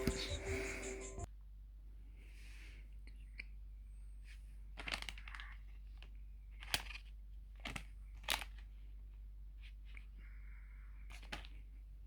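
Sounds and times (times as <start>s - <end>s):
packaging crinkling and rustling: 4.7s - 8.8s.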